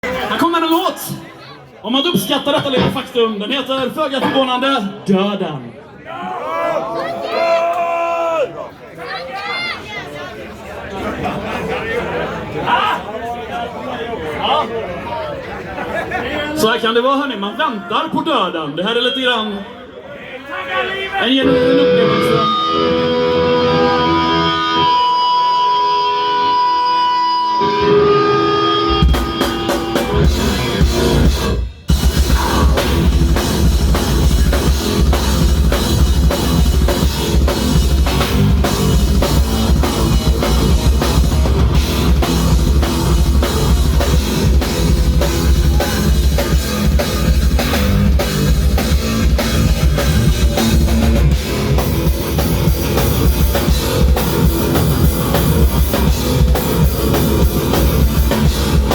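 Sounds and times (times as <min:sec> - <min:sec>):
rock band playing: 0:21.4 - 0:58.9.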